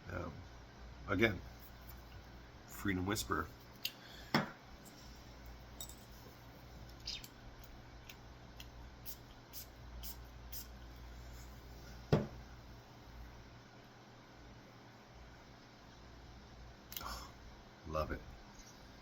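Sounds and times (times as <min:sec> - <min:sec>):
thump: 0:12.1 - 0:12.4.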